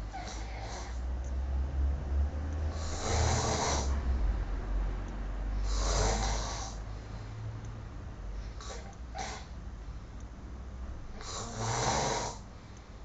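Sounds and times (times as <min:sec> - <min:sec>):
steady low hum: 0:00.0 - 0:13.0
man snoring: 0:00.1 - 0:01.0, 0:02.7 - 0:04.0, 0:05.6 - 0:06.9, 0:11.2 - 0:12.4.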